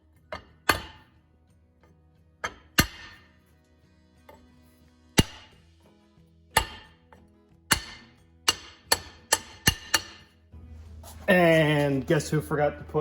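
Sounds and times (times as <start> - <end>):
hammer striking metal: 0.3 - 1.1, 2.4 - 3.3, 5.2 - 5.6, 6.5 - 7.1, 7.7 - 10.3.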